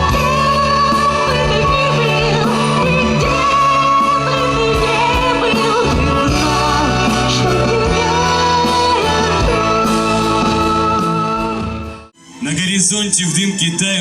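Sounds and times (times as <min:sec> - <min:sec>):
person singing with vibrato: 0:00.0 - 0:12.0.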